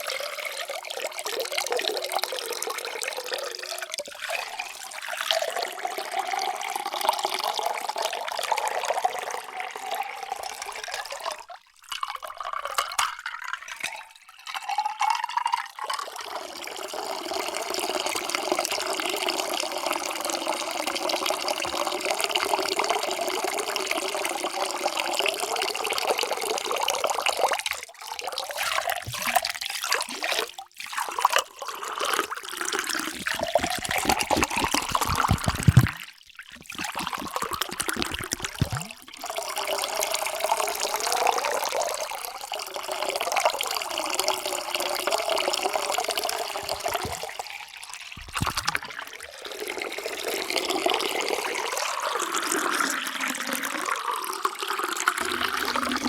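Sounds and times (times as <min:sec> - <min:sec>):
water pouring into container: 0:00.0 - 0:56.0.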